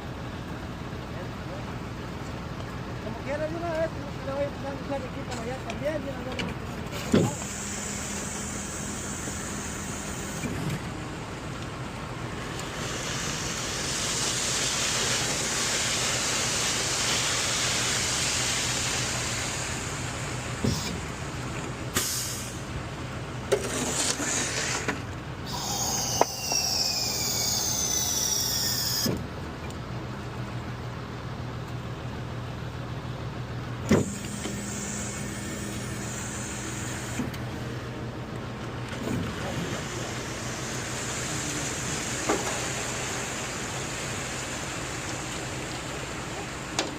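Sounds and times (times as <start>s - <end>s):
concrete mixer truck engine hum: 0.0s - 46.9s
hiss: 7.3s - 10.5s, 12.5s - 21.3s, 21.9s - 22.7s, 23.7s - 29.1s, 34.0s - 37.2s, 39.5s - 46.8s
falling whines: 24.0s - 29.2s.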